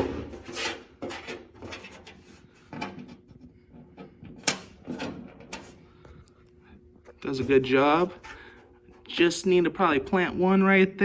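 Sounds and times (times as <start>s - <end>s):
tools scraping on sheet metal: 0.0s - 3.3s.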